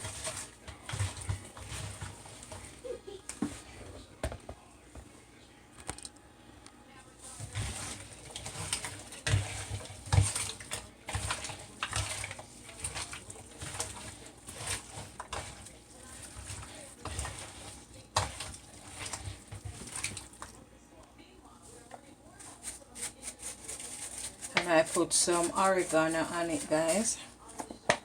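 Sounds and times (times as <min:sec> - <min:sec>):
wet squishing of raw chicken: 0:07.4 - 0:20.6.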